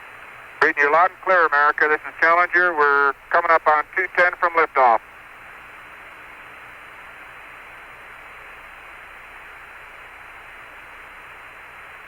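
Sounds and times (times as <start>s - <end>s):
faint low hum: 0.0s - 12.0s
radio static hiss: 0.2s - 6.2s.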